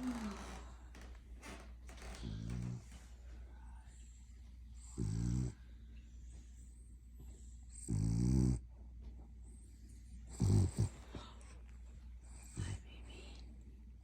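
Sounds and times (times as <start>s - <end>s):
puppy snoring: 0.0s - 0.7s, 2.0s - 3.1s, 4.8s - 5.7s, 7.7s - 8.7s, 9.7s - 11.6s, 12.2s - 13.5s.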